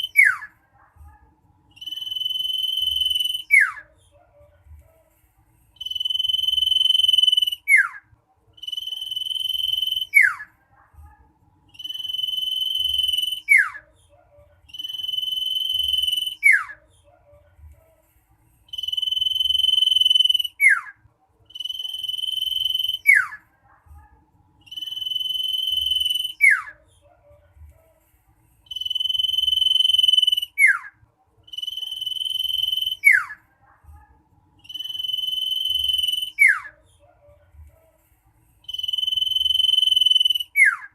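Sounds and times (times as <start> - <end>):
bird calling with high whistle: 0.0 - 0.5, 1.8 - 3.8, 5.8 - 8.0, 8.6 - 10.4, 11.8 - 13.8, 14.7 - 16.8, 18.7 - 20.9, 24.7 - 26.8, 28.7 - 30.9, 31.5 - 33.4, 34.6 - 36.8, 38.6 - 40.9.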